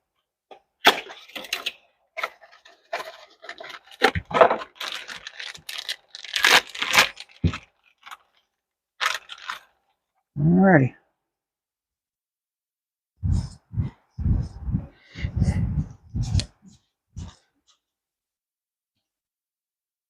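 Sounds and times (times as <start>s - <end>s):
packaging rustling and tearing: 1.0s - 9.8s.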